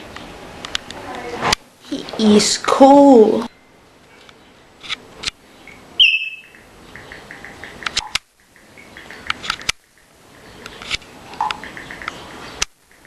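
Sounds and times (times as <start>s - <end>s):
parrot whistle: 6.0s - 6.6s
sharp clicks: 6.4s - 13.0s.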